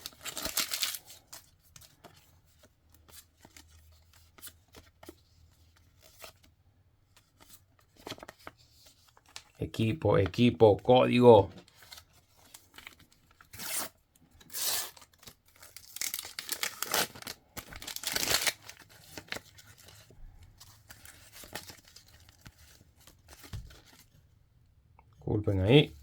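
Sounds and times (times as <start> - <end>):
paper packets tearing: 0.0 - 1.3, 11.9 - 20.1
crinkling and rustling: 0.0 - 9.6, 11.4 - 24.3.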